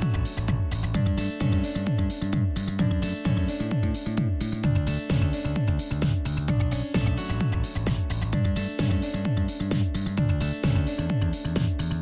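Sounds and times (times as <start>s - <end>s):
electronic dance music: 0.0s - 12.0s
sliding bass line: 0.0s - 12.0s.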